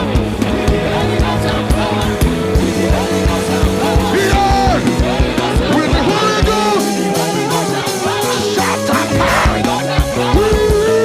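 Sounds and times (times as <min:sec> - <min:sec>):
singer's wordless melodic runs: 0:00.0 - 0:10.4
worship band playing: 0:00.0 - 0:11.0.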